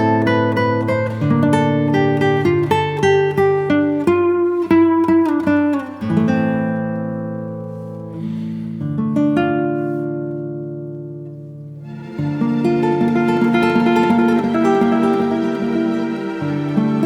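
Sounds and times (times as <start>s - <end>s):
acoustic guitar music: 0.0s - 17.0s.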